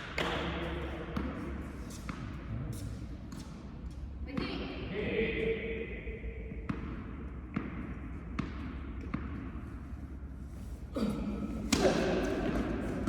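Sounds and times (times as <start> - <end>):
tennis ball bouncing on court: 0.0 - 2.4, 6.5 - 9.8.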